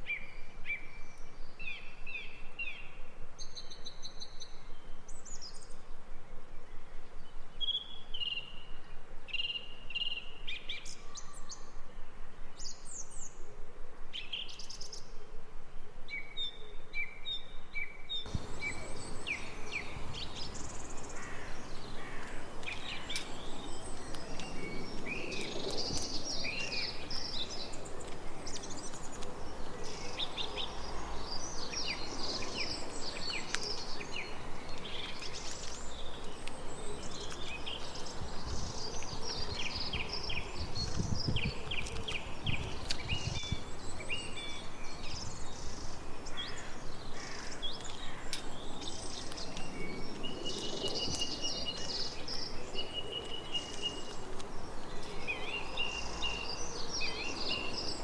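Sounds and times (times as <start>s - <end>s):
faint outdoor hiss: 18.3s - 58.0s
songbirds chirping and trilling: 18.3s - 58.0s.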